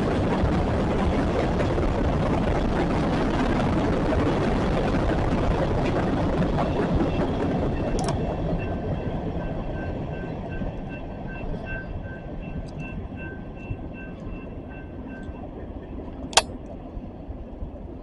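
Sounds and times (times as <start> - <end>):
sharp click: 16.3 - 16.5.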